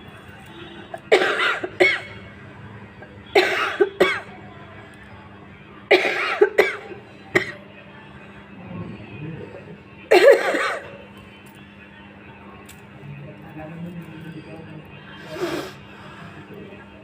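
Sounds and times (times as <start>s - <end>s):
woman coughing: 1.1s - 2.1s, 3.4s - 4.4s, 5.9s - 7.6s, 10.1s - 11.0s.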